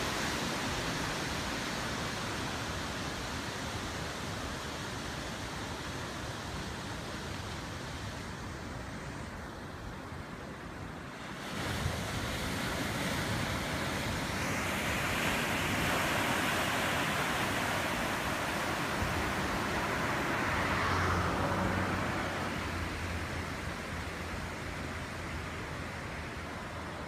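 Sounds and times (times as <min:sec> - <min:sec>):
ocean wave breaking: 0:10.6 - 0:27.0.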